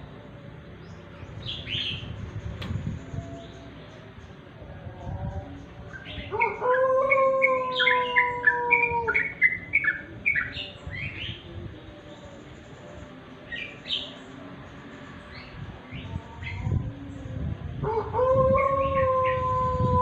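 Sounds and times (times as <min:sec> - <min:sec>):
bird chattering song: 0:00.7 - 0:04.5, 0:05.5 - 0:17.3.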